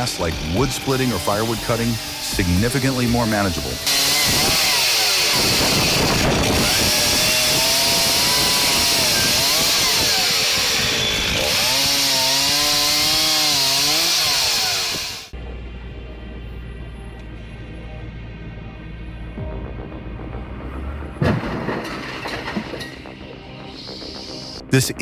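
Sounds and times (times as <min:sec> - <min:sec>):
chainsaw cutting wood: 0:00.0 - 0:15.4.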